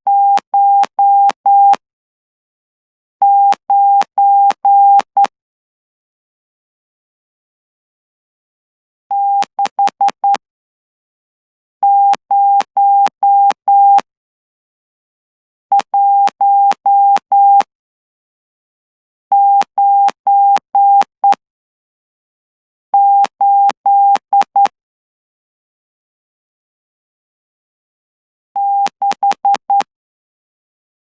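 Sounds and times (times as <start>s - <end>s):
morse code beeps: 0.1s - 1.8s, 3.2s - 5.3s, 9.1s - 10.4s, 11.8s - 14.0s, 15.8s - 17.7s, 19.4s - 21.4s, 23.0s - 24.8s, 28.6s - 29.9s.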